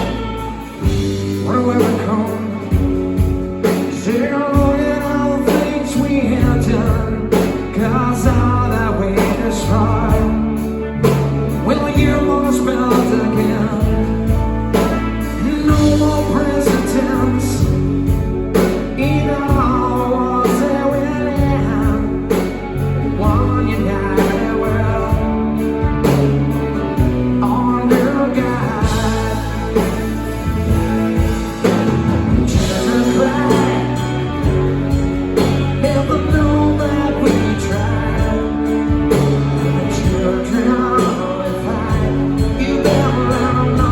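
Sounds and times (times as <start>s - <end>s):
live rock band playing ballad: 0.0s - 43.9s.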